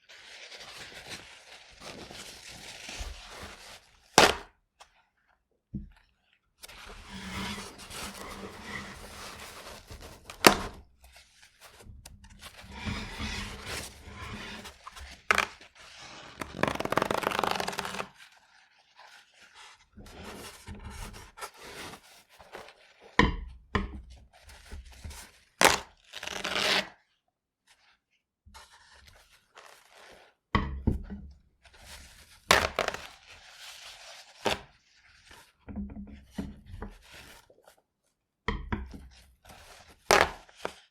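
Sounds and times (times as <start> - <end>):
paper towel rustling and unrolling: 0.0 - 4.4, 6.6 - 23.2, 31.7 - 35.6
paper towel ripping: 0.1 - 4.5, 6.7 - 11.7, 12.5 - 20.5, 25.6 - 26.9, 32.5 - 35.2, 39.8 - 40.9.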